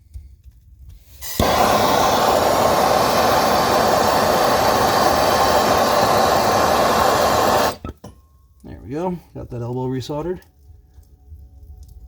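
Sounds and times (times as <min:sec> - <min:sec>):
torch flame rushing: 0:01.0 - 0:07.8.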